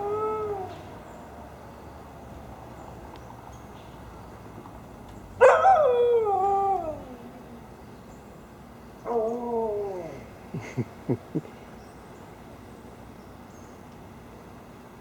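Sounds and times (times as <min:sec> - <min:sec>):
dog howling: 0:05.4 - 0:07.6, 0:09.0 - 0:10.3.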